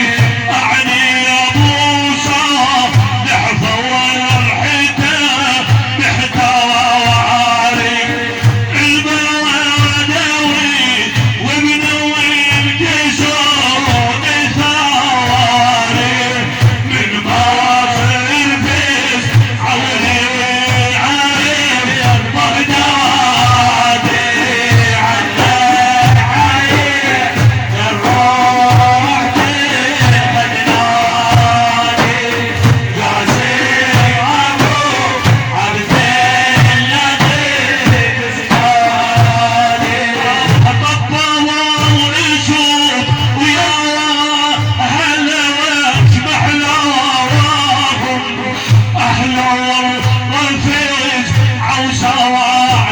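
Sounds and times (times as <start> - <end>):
man singing: 0.0 - 52.9
low repeating beat: 14.0 - 40.8.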